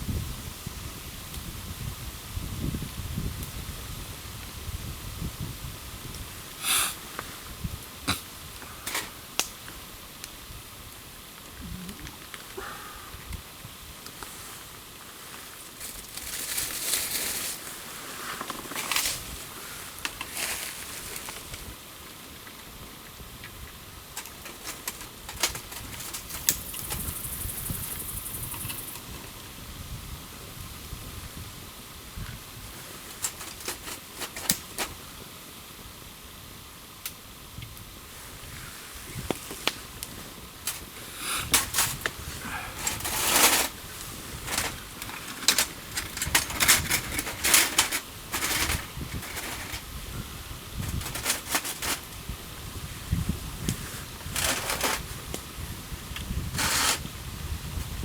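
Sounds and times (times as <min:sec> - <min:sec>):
campfire crackling: 0:05.8 - 0:27.6, 0:30.3 - 0:58.0
fire pops and snaps: 0:08.1 - 0:10.4, 0:23.4 - 0:27.1, 0:32.2 - 0:35.0, 0:39.1 - 0:52.3, 0:53.6 - 0:56.9.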